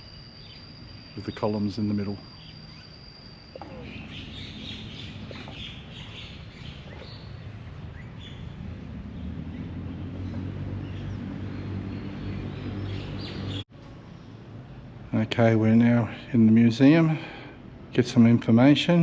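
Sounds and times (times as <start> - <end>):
small birds chirping: 0.0 - 14.9
low engine hum: 0.0 - 19.0.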